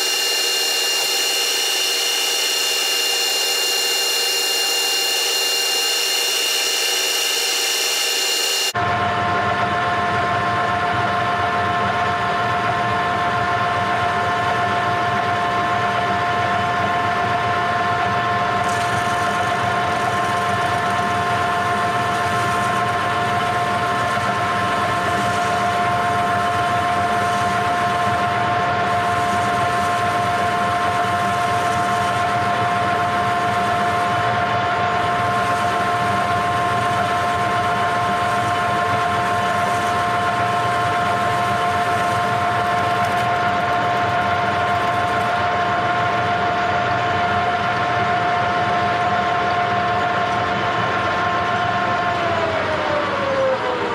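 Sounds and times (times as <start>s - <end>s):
electric motor whining: 0.0s - 8.8s, 18.6s - 45.5s.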